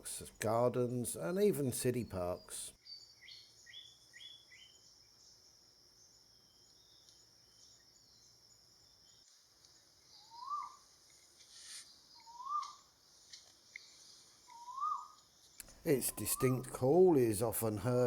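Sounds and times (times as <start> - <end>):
high insect hiss: 3.2 - 18.0
bird whistling: 10.2 - 10.8, 12.2 - 12.8, 14.5 - 15.2, 15.9 - 17.8.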